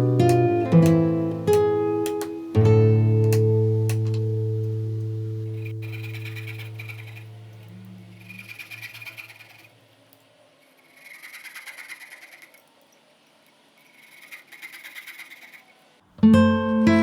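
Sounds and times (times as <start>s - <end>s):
acoustic guitar music: 0.0s - 8.4s, 16.0s - 17.0s
hand tool scraping wood: 5.6s - 9.8s.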